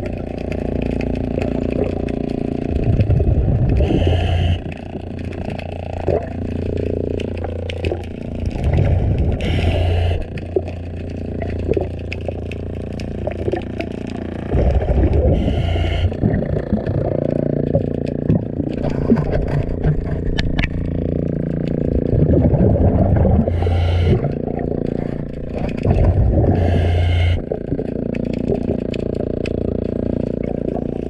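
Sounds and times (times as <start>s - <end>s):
gurgling exhaust bubbles: 0.0s - 31.0s
steady low hum: 0.0s - 31.0s
diver breathing through regulator: 3.0s - 4.9s, 8.6s - 10.7s, 14.5s - 16.7s, 23.2s - 25.3s, 26.2s - 27.6s.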